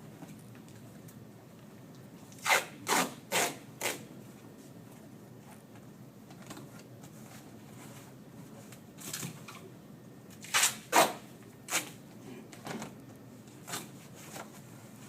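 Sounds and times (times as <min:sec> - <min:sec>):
tape ripping off roll: 0:02.4 - 0:04.1, 0:10.4 - 0:12.0.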